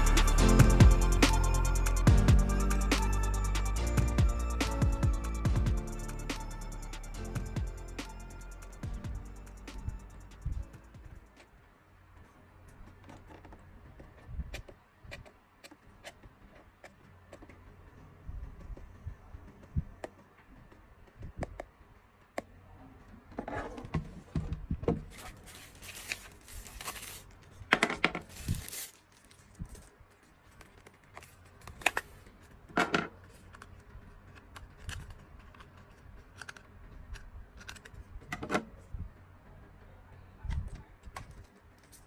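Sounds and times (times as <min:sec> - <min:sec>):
packaging rustling and tearing: 0:25.1 - 0:27.4, 0:28.2 - 0:30.0.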